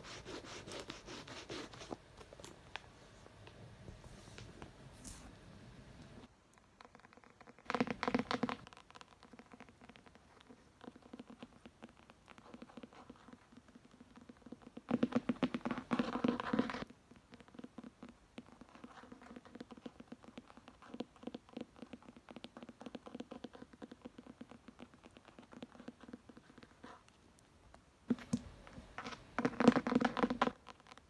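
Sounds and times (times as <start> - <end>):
fingernails tapping on a book: 14.9 - 16.8.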